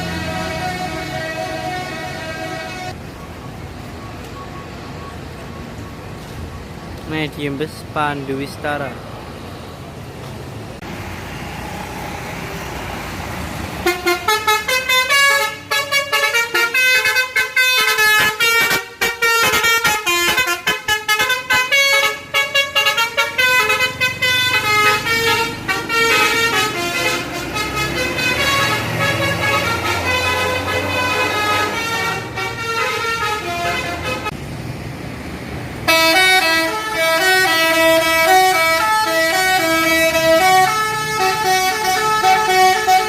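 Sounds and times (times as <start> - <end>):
bus horn playing a melody: 0.0 - 3.0, 13.8 - 34.4, 35.8 - 43.0
bus engine running: 0.0 - 8.0, 8.8 - 43.0.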